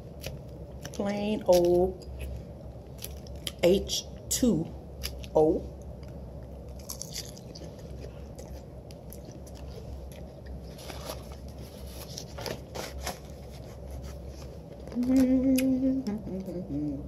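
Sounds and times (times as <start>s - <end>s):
steady low hum: 0.0s - 17.0s
person humming: 14.9s - 17.0s.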